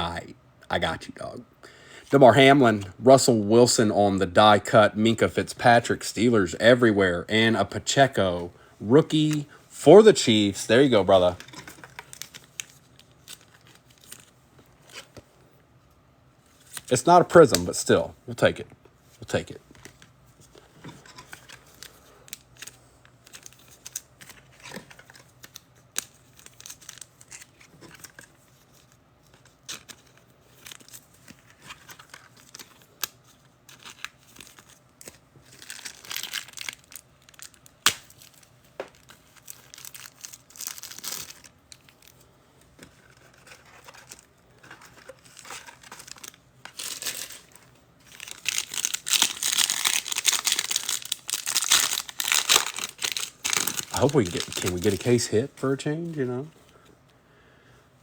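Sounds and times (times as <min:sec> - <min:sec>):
wrappers tearing and crinkling: 0:10.3 - 0:15.1, 0:21.2 - 0:42.3, 0:43.0 - 0:55.4.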